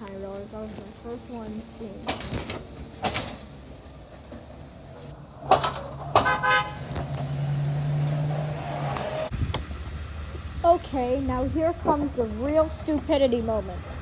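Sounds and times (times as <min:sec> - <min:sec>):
low diesel hum: 0:00.0 - 0:14.0
horn toot: 0:06.1 - 0:07.0.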